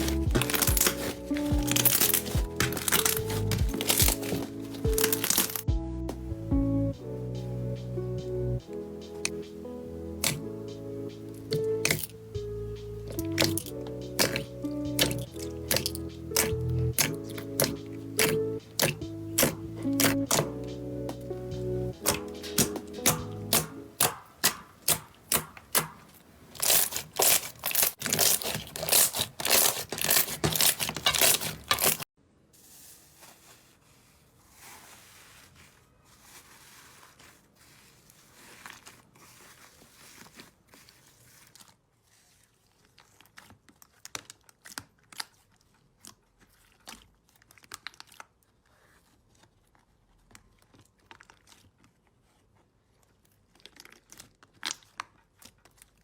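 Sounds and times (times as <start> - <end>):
slime crackling: 0.0 - 5.7, 10.2 - 32.1, 34.5 - 48.5
slime squishing: 0.0 - 5.7, 9.0 - 32.1, 33.2 - 56.0.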